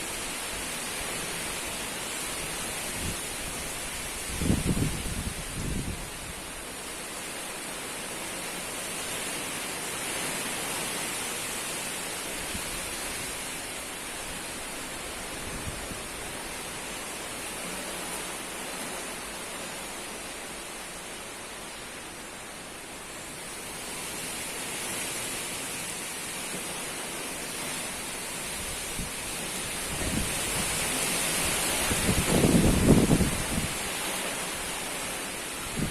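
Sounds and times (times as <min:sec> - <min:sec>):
strong wind blowing: 0:02.8 - 0:06.5, 0:28.5 - 0:34.2, 0:35.6 - 0:35.9
wind buffeting microphone: 0:02.9 - 0:06.4, 0:28.6 - 0:34.0, 0:35.7 - 0:35.9.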